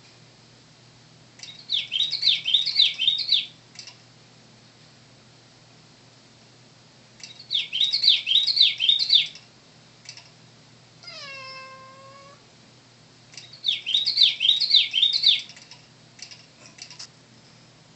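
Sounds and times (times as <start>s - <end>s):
cat meowing: 11.0s - 12.4s.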